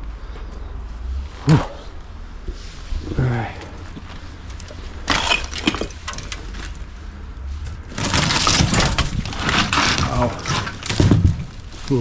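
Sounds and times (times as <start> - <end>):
footsteps crunching through debris: 2.5 - 12.0.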